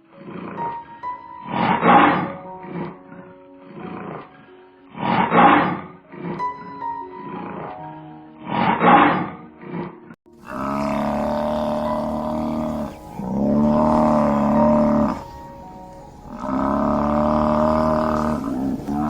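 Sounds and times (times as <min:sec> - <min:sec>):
soft background music: 0:00.0 - 0:19.0
lion roaring: 0:10.4 - 0:19.0.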